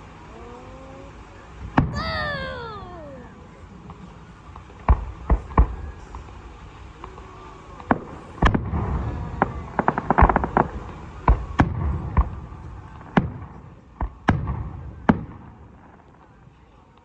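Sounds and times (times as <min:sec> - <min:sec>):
rapid crackling fireworks pops: 0:04.6 - 0:16.4.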